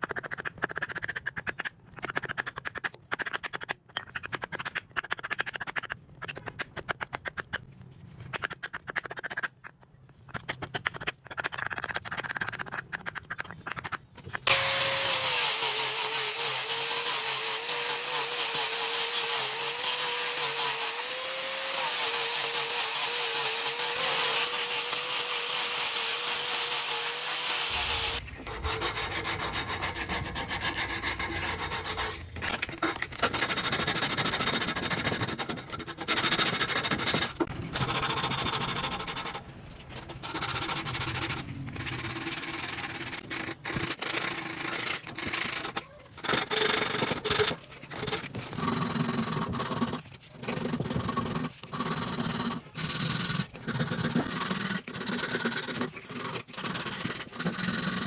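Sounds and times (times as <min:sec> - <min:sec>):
abrasive rubbing and scraping: 0:25.7 - 0:43.2.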